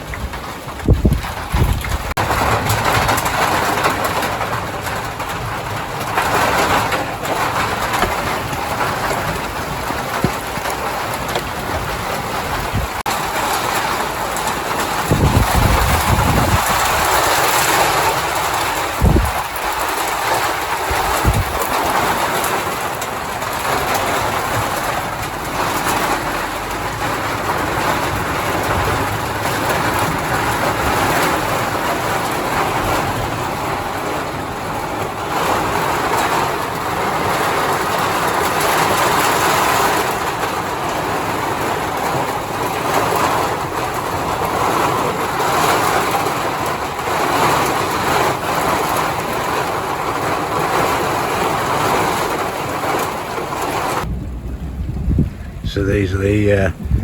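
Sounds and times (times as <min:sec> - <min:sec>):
heavy rain pouring: 0:00.0 - 0:57.0
low thumps: 0:06.8 - 0:13.0, 0:54.1 - 0:55.7, 0:56.7 - 0:57.0.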